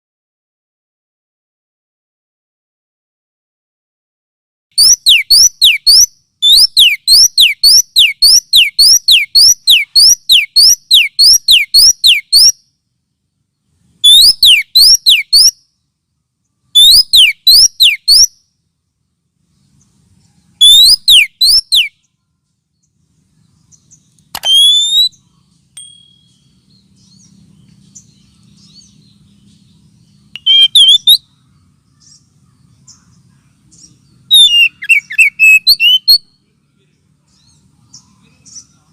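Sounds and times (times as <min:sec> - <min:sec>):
bird whistling calls: 0:04.8 - 0:12.6, 0:14.0 - 0:15.6, 0:16.8 - 0:18.4, 0:20.6 - 0:22.1, 0:23.7 - 0:25.3, 0:26.0 - 0:31.3, 0:33.8 - 0:36.4.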